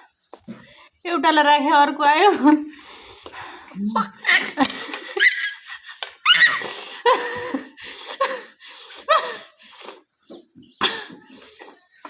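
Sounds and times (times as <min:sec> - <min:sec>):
person gasping and laughing: 0:02.8 - 0:10.0.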